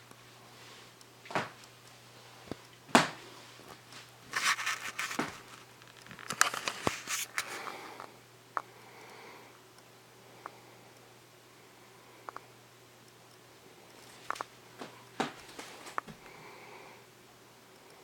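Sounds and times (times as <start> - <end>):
ceiling fan motor hum: 0.0 - 18.0
crinkling rustles: 2.4 - 7.7.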